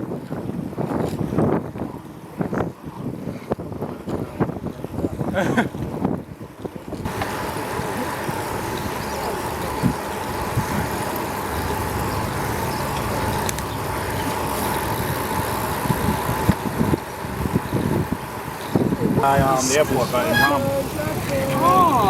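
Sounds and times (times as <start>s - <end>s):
vehicle and road noise: 0.0s - 22.0s
mid-pitched whine: 7.1s - 22.0s.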